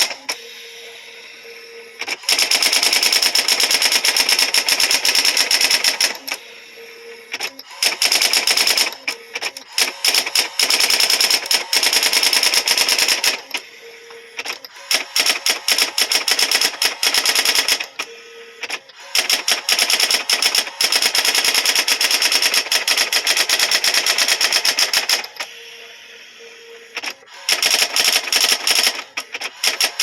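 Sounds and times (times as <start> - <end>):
typewriter motor hum: 0.0 - 30.0.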